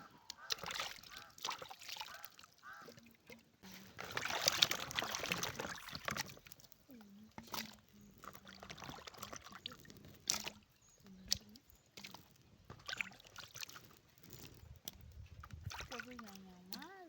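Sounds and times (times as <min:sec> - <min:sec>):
water sloshing and pouring: 0:00.0 - 0:17.0.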